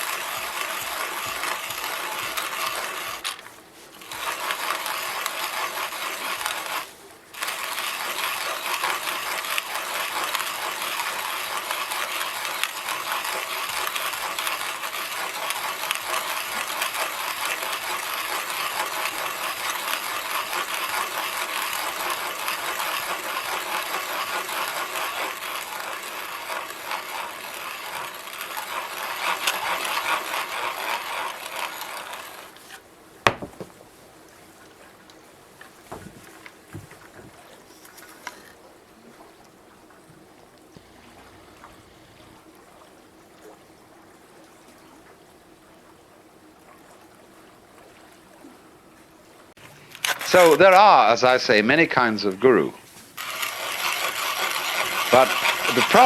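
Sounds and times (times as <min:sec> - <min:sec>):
hand coffee grinder crunching: 0:00.0 - 0:33.7, 0:49.9 - 0:50.9, 0:53.2 - 0:56.0.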